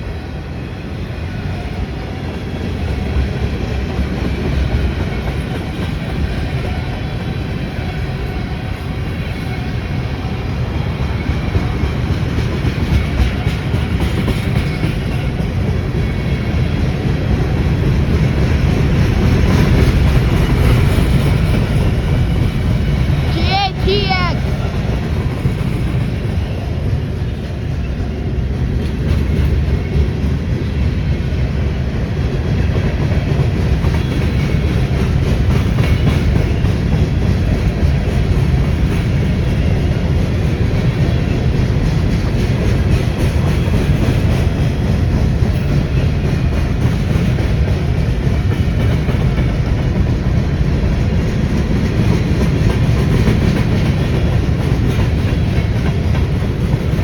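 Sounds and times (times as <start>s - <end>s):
freight train wheels rumbling on rails: 0.0s - 57.0s.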